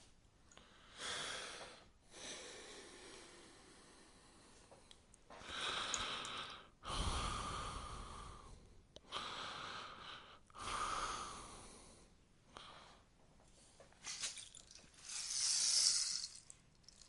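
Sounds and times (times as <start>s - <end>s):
rainstick pellets trickling: 14.0s - 17.0s.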